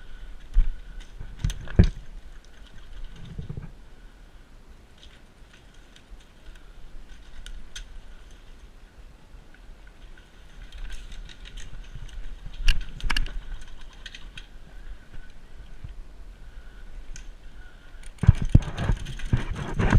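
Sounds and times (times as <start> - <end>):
airsoft clicks and rattles: 0.3 - 3.7, 5.0 - 8.7, 9.5 - 16.0, 18.0 - 19.9.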